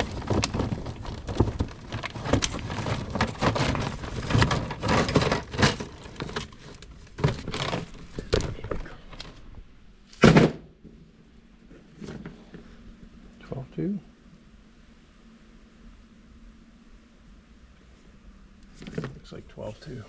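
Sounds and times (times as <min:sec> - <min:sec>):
objects clattering and knocking: 0:00.0 - 0:09.5
heavy thud: 0:10.2 - 0:10.8.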